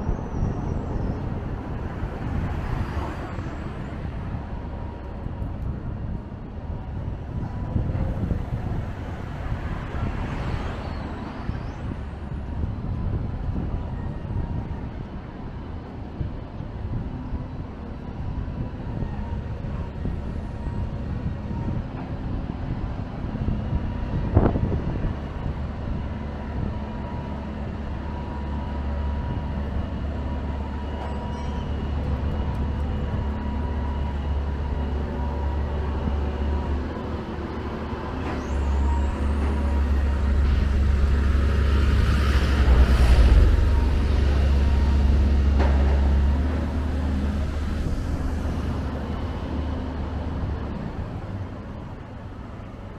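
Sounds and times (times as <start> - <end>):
city street traffic rumble: 0.0 - 52.9
heavy vehicle engine rumbling: 0.0 - 52.9.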